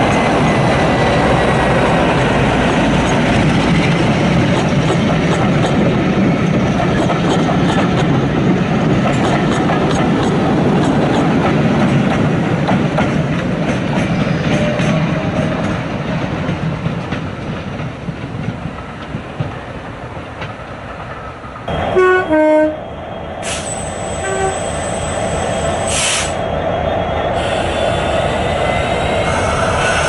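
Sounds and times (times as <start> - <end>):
diesel locomotive rumble: 0.0 - 30.0
two-tone locomotive horn: 21.8 - 22.8, 24.2 - 24.9.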